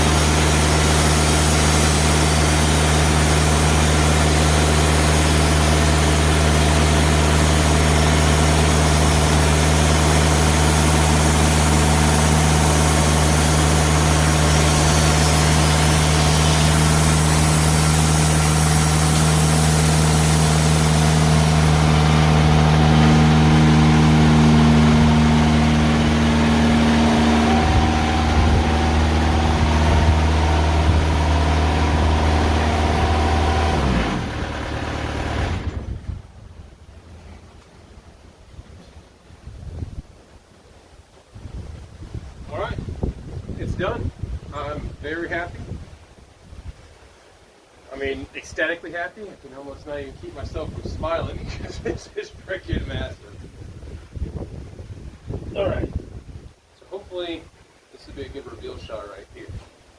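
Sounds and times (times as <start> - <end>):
bandsaw blade cutting log: 0.0 - 36.0
diesel engine running: 0.0 - 38.2.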